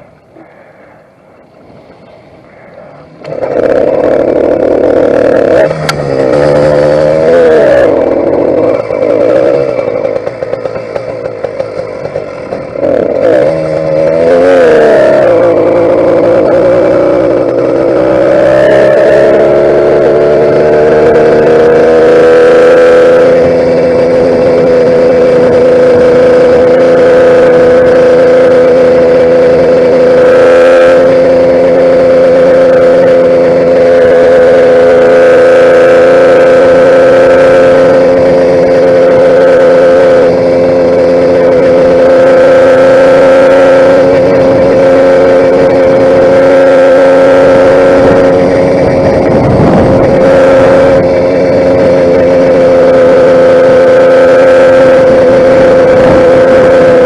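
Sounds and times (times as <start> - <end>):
two-stroke engine running: 0.0 - 57.0.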